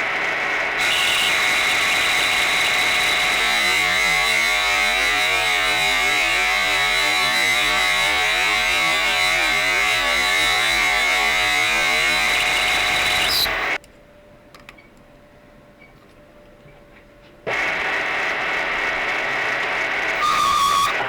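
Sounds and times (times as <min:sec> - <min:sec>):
lathe tool chatter rumble: 0:00.8 - 0:13.8
metal lathe ringing: 0:00.8 - 0:13.8.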